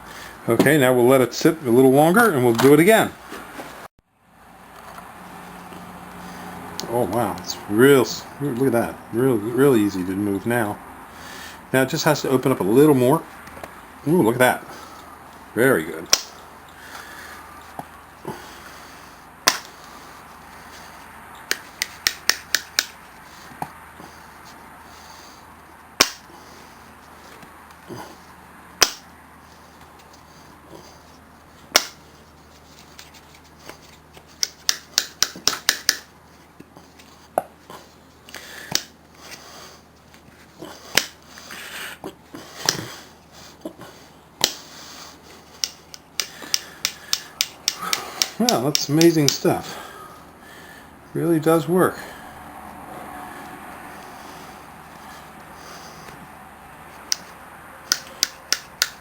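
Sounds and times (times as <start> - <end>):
pliers metal clicks: 21.5 - 23.0, 34.4 - 36.1, 45.6 - 49.4, 57.9 - 59.0.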